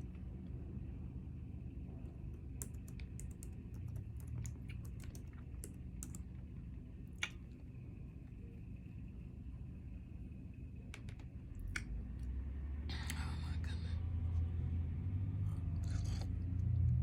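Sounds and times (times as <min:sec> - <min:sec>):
steady low hum: 0:00.0 - 0:17.0
light clicks and taps: 0:10.9 - 0:12.3.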